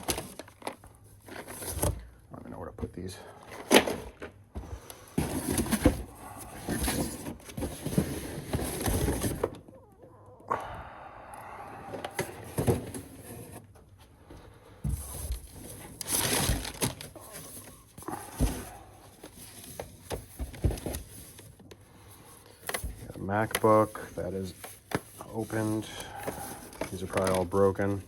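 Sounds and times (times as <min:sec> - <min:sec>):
items knocking and scraping: 0:02.8 - 0:09.7, 0:11.8 - 0:21.6, 0:22.5 - 0:28.0
rustling: 0:15.0 - 0:28.0.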